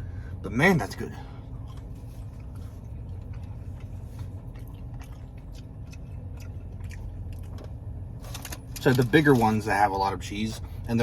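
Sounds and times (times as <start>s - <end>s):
steady low hum: 0.0s - 11.0s
chewing mouth sounds: 1.5s - 7.7s.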